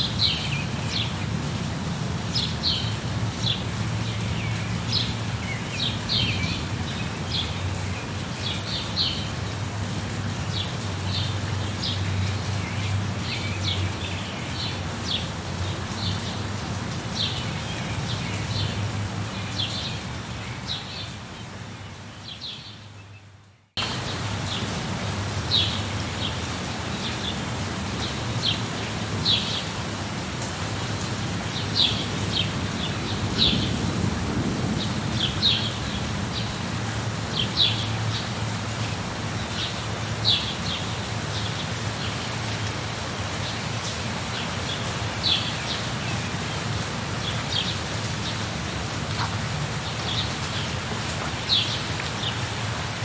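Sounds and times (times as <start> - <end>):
steady rain: 0.0 - 53.0
low rumble of thunder: 32.9 - 36.8
birds chirping: 43.2 - 53.0.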